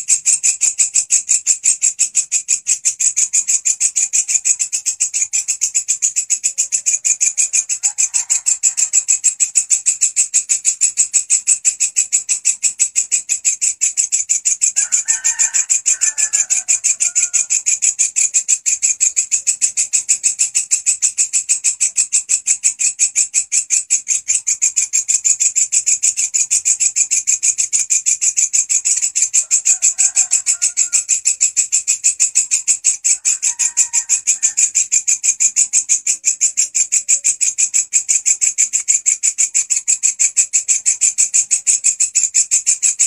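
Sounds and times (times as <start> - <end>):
faint animal calls: 0.0 - 43.0
insect stridulating: 0.0 - 43.0.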